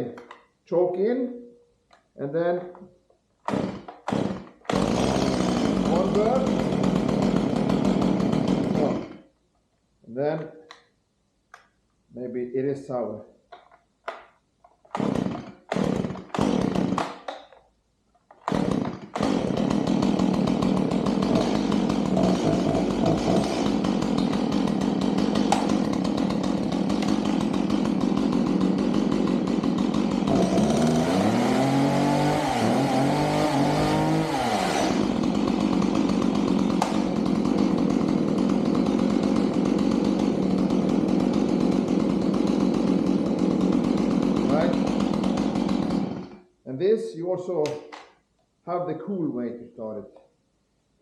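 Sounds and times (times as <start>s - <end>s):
chainsaw engine running: 3.5s - 9.2s, 14.9s - 17.3s, 18.4s - 46.4s.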